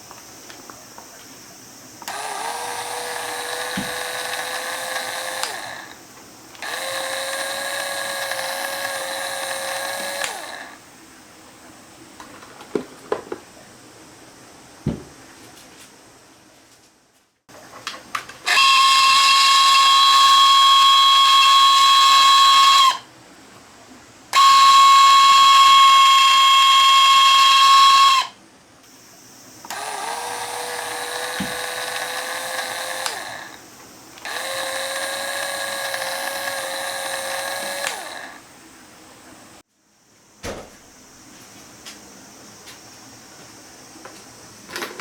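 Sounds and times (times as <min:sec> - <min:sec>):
sprayer electric motor whine: 0:02.0 - 0:06.0, 0:06.6 - 0:10.8, 0:18.5 - 0:23.0, 0:24.4 - 0:28.4, 0:29.7 - 0:38.5.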